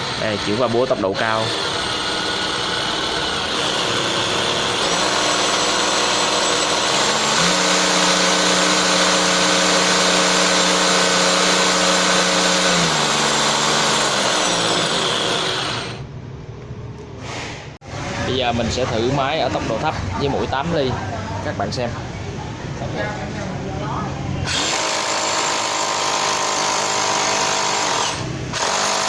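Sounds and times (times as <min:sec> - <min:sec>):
hammer drill motor whine: 0:00.0 - 0:16.0, 0:24.5 - 0:29.0.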